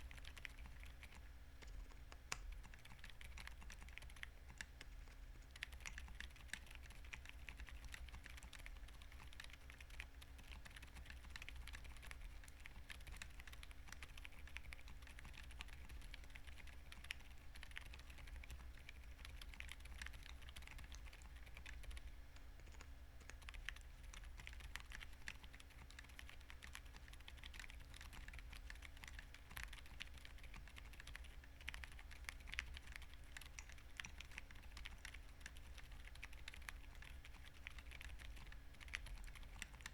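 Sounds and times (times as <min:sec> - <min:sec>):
faint low hum: 0:00.0 - 0:39.9
typing on mechanical keyboard: 0:00.0 - 0:39.9.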